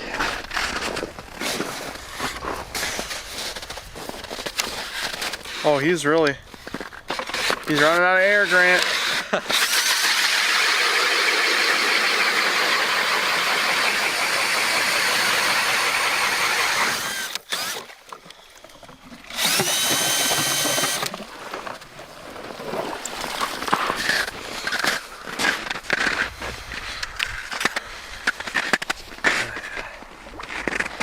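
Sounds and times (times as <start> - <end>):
power ice auger drilling: 4.4 - 6.0, 6.6 - 21.8, 22.5 - 26.3.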